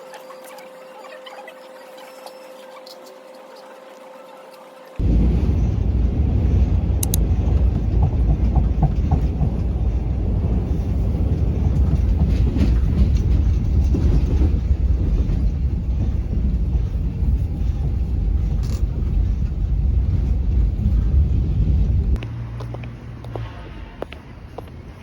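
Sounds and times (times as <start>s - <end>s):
moving vehicle rumble and rattle: 5.0s - 25.0s.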